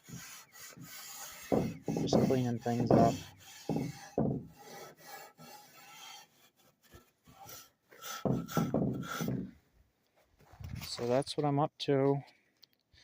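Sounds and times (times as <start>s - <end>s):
sandpaper rasping on metal: 0.0s - 9.3s.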